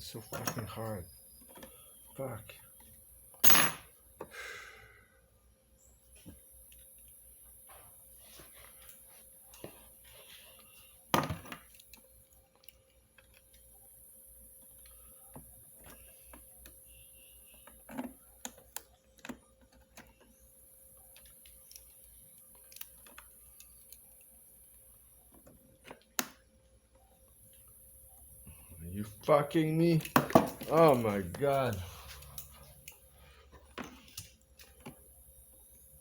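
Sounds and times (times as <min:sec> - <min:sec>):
faint steady hum: 0:00.0 - 0:36.0
vacuum parts clicking and knocking: 0:00.2 - 0:01.8, 0:29.2 - 0:32.4.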